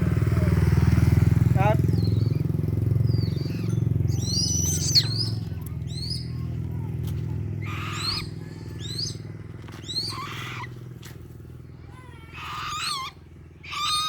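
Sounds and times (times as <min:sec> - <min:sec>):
steady low hum: 0:00.0 - 0:14.0
buzzard calling: 0:03.1 - 0:06.3, 0:07.6 - 0:09.2, 0:09.8 - 0:10.8, 0:11.9 - 0:14.0.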